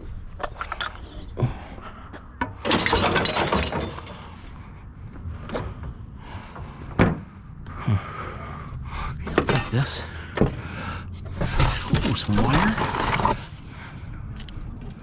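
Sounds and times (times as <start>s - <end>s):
knocks and clicks of junk: 2.4s - 4.6s, 5.5s - 7.4s, 9.2s - 13.5s
loud crashing clatter: 2.6s - 4.2s.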